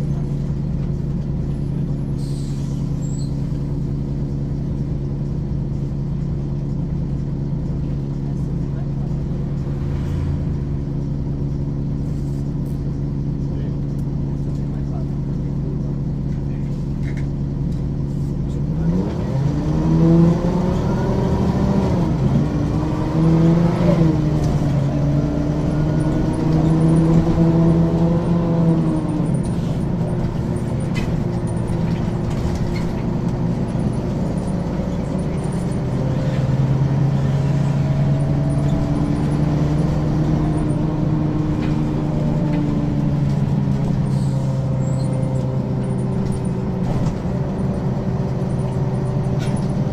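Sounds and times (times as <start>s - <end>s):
bus diesel engine: 0.0s - 49.9s.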